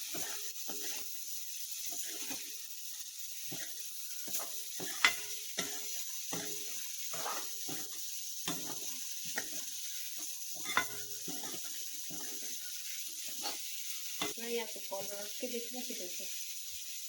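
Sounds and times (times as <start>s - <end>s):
spatula scraping pan: 0.0s - 2.7s, 3.4s - 14.4s
curry sizzling in hot oil: 0.0s - 17.0s
spatula knocking on pan: 4.3s - 9.6s.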